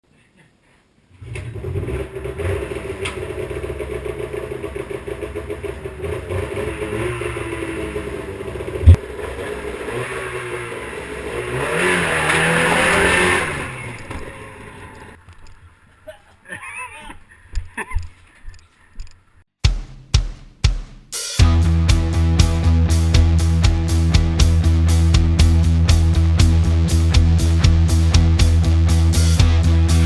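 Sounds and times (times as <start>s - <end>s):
snowmobile engine running: 1.6s - 15.2s.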